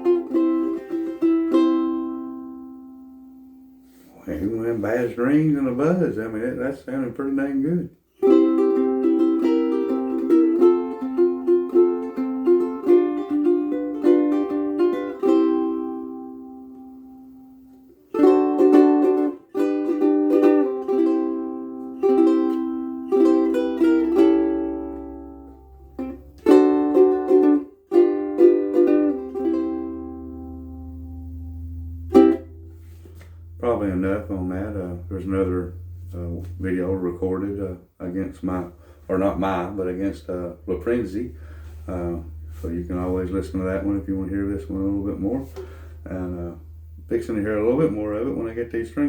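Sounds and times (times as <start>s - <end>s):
ukulele playing a tune: 0.0s - 6.5s, 7.6s - 49.0s.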